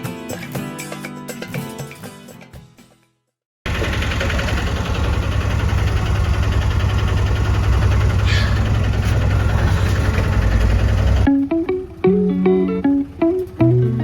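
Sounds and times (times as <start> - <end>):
road noise: 3.7 - 14.0
vehicle engine rumble: 3.7 - 14.0.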